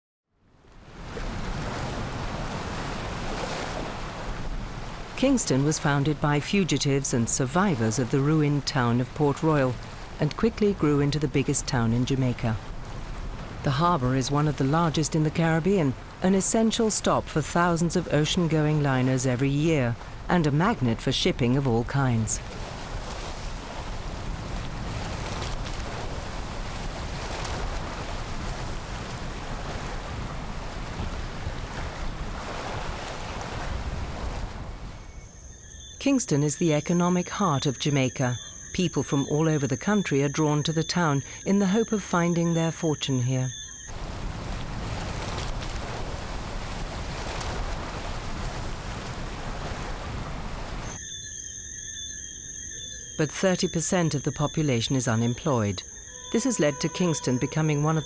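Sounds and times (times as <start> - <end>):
wind: 0.3 - 58.0
sea water washing: 0.6 - 51.0, 53.2 - 58.0
wind buffeting microphone: 22.4 - 35.2, 43.9 - 50.9.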